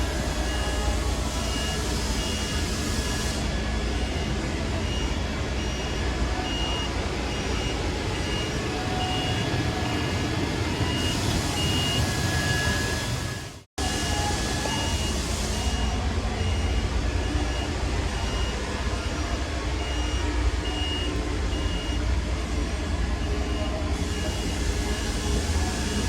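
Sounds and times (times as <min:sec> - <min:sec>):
machine shop hum: 0:00.0 - 0:26.0
short high electronic beep: 0:03.9 - 0:22.1.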